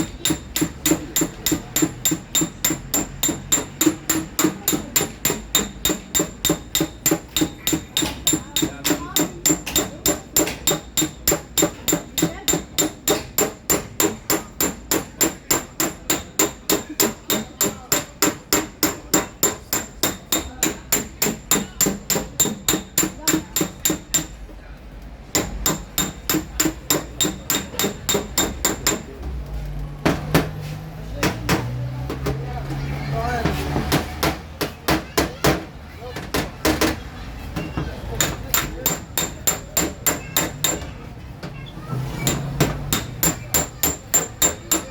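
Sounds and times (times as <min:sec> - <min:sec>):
hammer tapping sheet metal: 0:00.0 - 0:24.5, 0:25.3 - 0:29.2, 0:38.2 - 0:41.0, 0:42.2 - 0:44.9.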